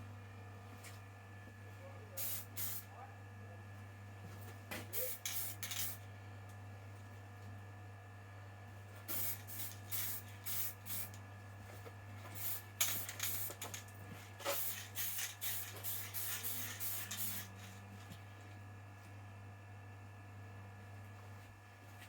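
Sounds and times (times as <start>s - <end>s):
spray can hissing bursts: 2.2s - 2.8s, 9.1s - 11.1s, 14.5s - 17.5s.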